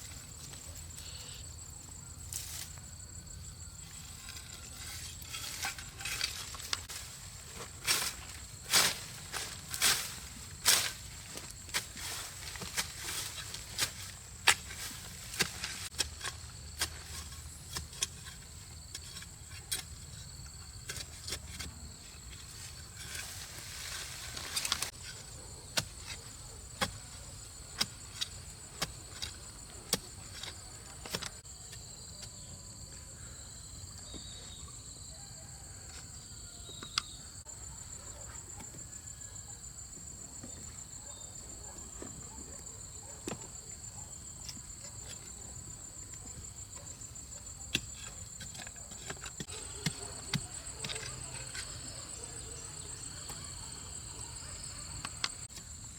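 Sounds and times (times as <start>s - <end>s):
insects chorus pulsing: 21.9s - 55.9s.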